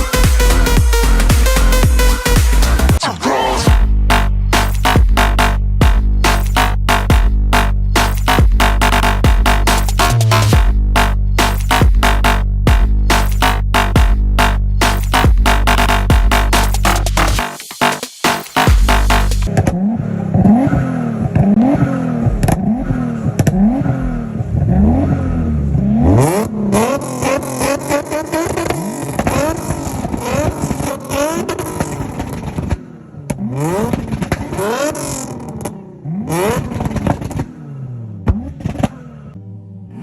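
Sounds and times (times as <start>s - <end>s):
car engine revving: 0.0s - 40.0s
exhaust pops: 20.4s - 25.1s, 26.2s - 35.8s, 36.4s - 37.6s, 38.2s - 39.0s.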